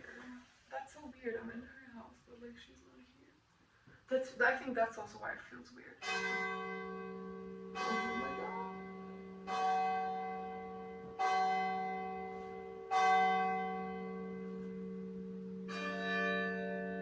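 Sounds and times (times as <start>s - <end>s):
church bell striking: 6.0s - 17.0s.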